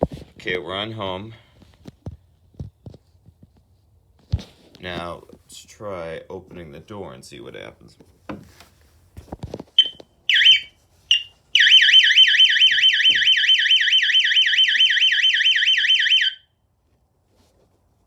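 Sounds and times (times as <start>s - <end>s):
alarm chirps: 9.8s - 16.4s
warbling alarm siren: 9.8s - 16.4s.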